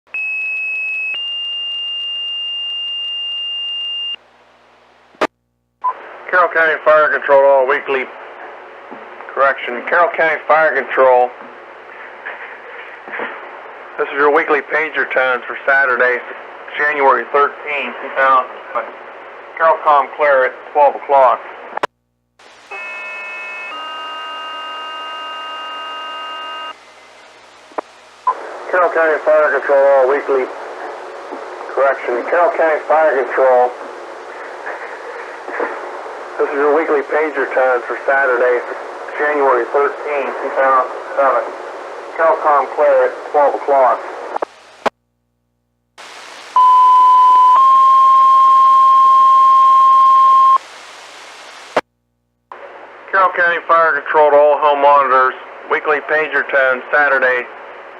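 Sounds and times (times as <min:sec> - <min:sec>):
radio hiss: 0:04.8 - 0:44.9, 0:46.0 - 0:48.4, 0:50.0 - 0:51.8
two-tone pager alert: 0:22.7 - 0:26.7.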